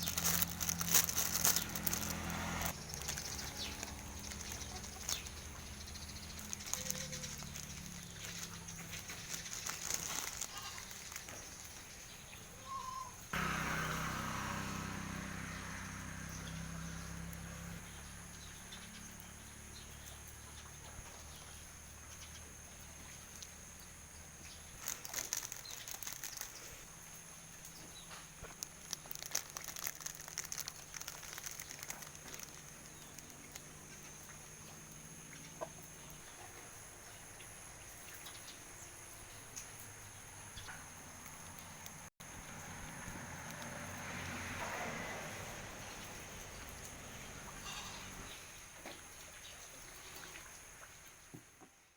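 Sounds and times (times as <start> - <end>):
rustling: 0.0 - 11.9, 24.7 - 27.0, 27.8 - 34.1.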